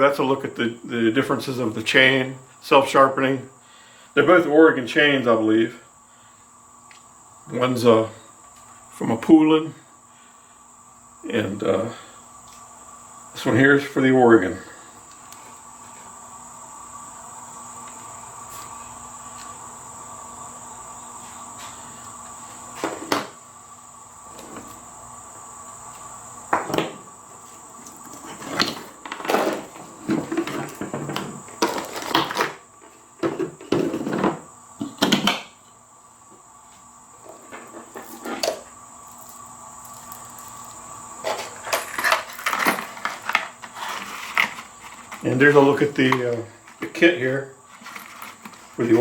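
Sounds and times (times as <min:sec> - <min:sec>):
faint high-pitched whine and hum: 0:00.0 - 0:49.0
handling clicks and rustles: 0:41.2 - 0:47.1, 0:47.7 - 0:49.0.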